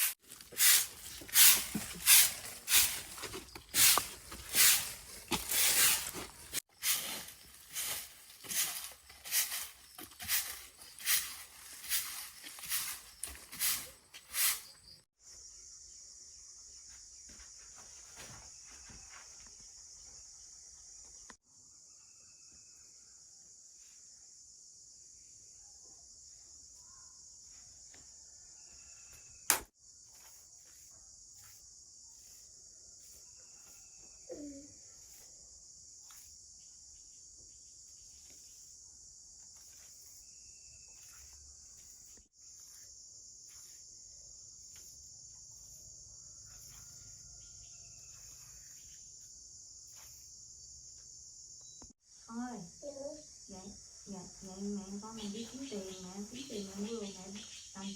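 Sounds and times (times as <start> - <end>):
crickets chirping: 0.0 - 57.9
sharp click: 29.5 - 29.7.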